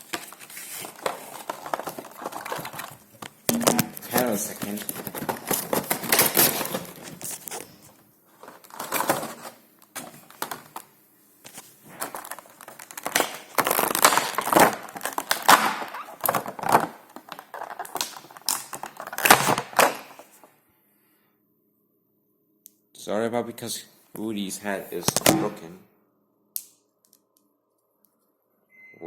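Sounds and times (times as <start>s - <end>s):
box packaging crinkling: 0.0s - 10.9s, 11.5s - 20.4s.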